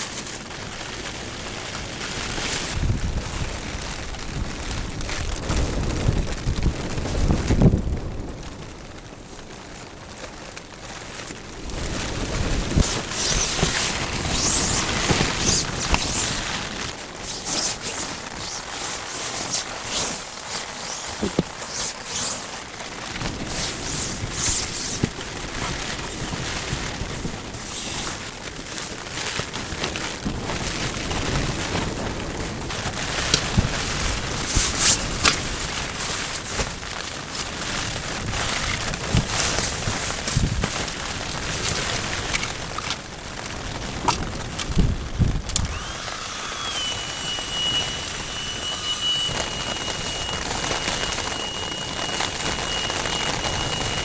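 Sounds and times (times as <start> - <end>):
rain: 0.0 - 21.3, 21.9 - 46.0
tent fabric snapping: 10.1 - 54.0
wind buffeting microphone: 42.0 - 54.0.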